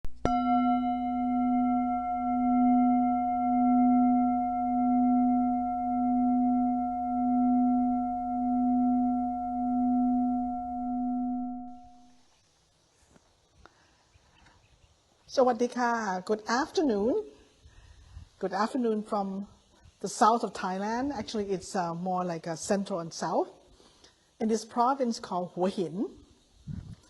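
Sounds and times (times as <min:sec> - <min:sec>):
singing bowl ringing: 0:00.2 - 0:12.2.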